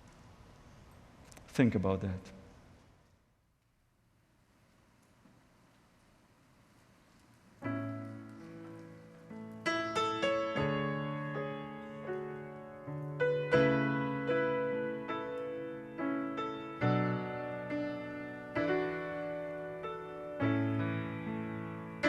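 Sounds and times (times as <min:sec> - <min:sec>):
slow piano chords: 0:07.5 - 0:22.0.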